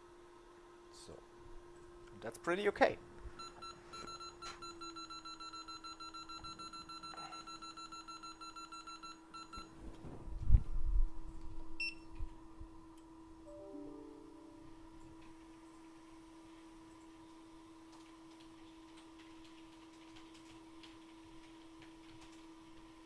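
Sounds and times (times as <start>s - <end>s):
low hum: 13.4s - 16.2s.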